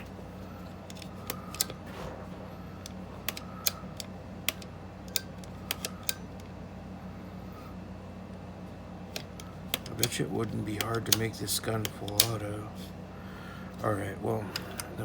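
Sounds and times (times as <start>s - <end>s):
low steady hum: 0.0s - 15.0s
clicks of plastic and metal parts: 0.9s - 2.2s, 2.8s - 6.5s, 9.1s - 12.5s.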